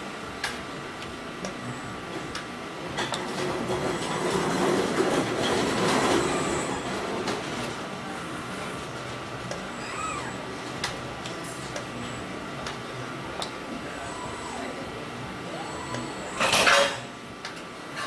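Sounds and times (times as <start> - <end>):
machine hum: 0.0 - 18.0
folding machine rumbling and rattling: 3.0 - 12.7.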